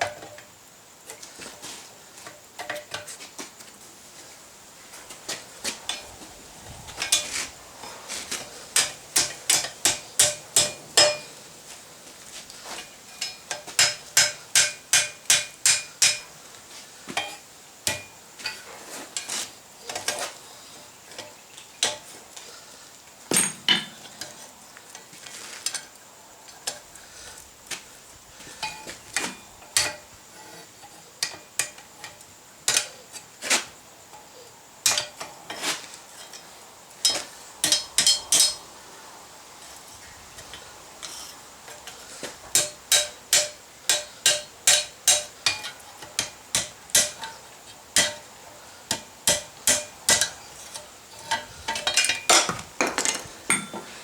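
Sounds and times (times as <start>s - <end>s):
hammer ringing on anvil: 8.8s - 11.3s.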